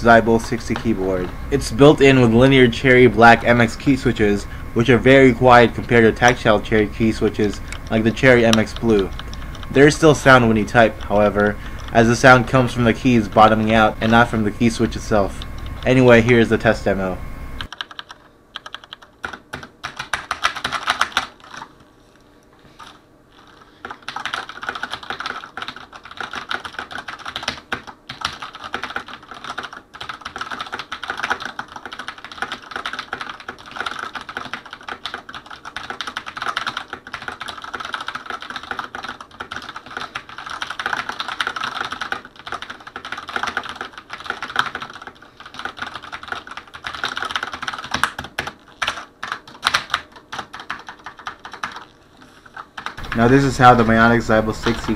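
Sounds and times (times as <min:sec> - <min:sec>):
mechanical keyboard typing: 0:05.6 - 0:12.8, 0:17.6 - 0:21.7, 0:23.8 - 0:51.9, 0:52.5 - 0:54.9.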